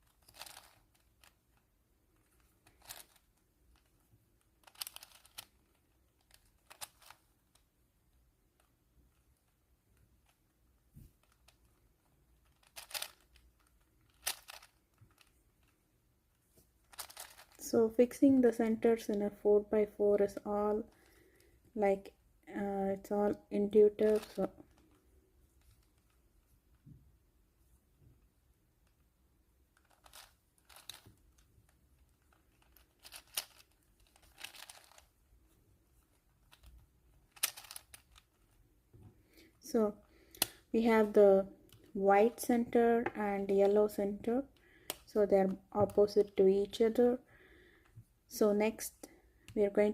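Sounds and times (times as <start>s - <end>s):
plastic puzzle cube clicking: 0.0s - 7.6s, 12.4s - 15.7s, 16.9s - 17.6s, 29.8s - 31.5s, 32.2s - 35.1s, 36.4s - 38.6s, 40.3s - 40.6s, 44.8s - 45.1s.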